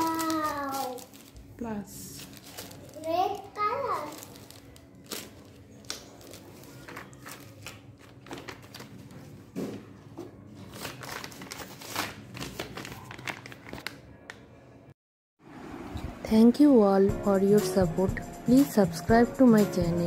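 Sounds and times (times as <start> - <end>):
packaging crinkling and rustling: 0.0 - 9.4, 10.5 - 14.1.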